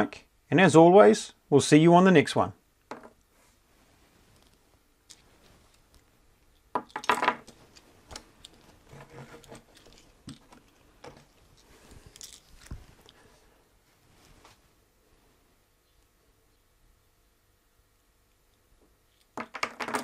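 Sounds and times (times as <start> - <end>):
small hard objects rattling: 8.4 - 12.8.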